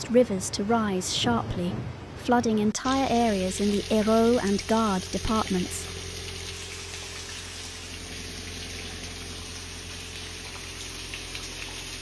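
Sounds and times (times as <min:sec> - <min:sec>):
running floodwater: 0:02.9 - 0:12.0
rain hissing: 0:03.0 - 0:12.0.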